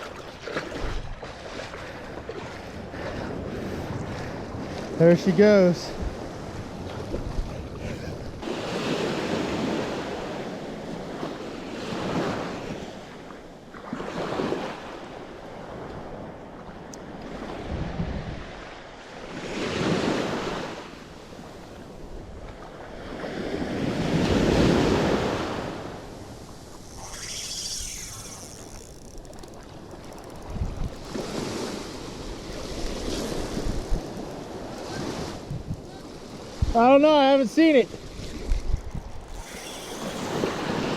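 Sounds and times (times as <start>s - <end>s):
wind rumbling on microphone: 5.9s - 10.1s, 17.3s - 18.6s, 22.1s - 37.0s.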